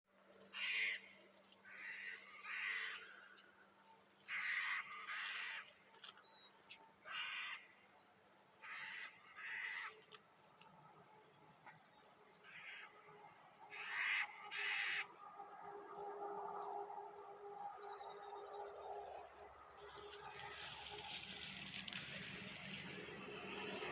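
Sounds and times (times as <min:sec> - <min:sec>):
harsh raspy bird calls: 0:00.5 - 0:03.5, 0:04.2 - 0:05.8, 0:07.0 - 0:07.9, 0:08.6 - 0:10.1, 0:12.4 - 0:15.4.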